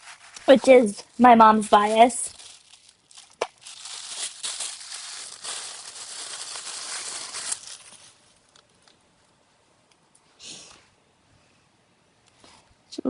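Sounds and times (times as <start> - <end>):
plastic packaging crinkling: 0.0 - 9.0.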